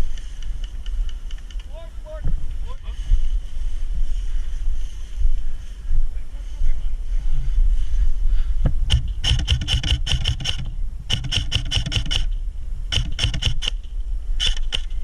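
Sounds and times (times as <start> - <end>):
wind rumble: 0.0 - 15.0
airsoft guns firing: 8.9 - 14.9.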